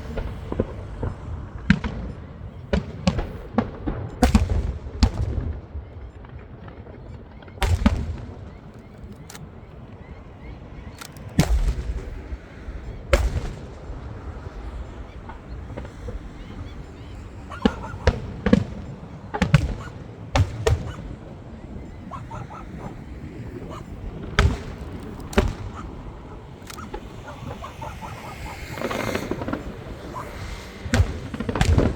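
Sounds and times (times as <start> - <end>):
firework shells bursting: 0.0 - 5.6, 6.3 - 31.9
low rumbling echo: 9.9 - 31.9.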